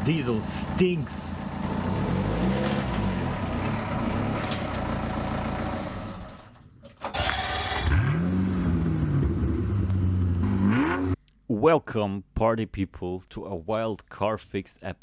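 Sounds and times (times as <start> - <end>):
diesel car engine revving: 0.0 - 6.6, 7.2 - 11.2.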